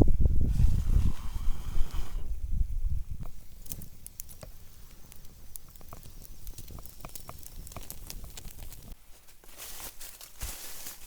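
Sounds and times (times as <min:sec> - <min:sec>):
steak crackling on coals: 0:02.9 - 0:11.0.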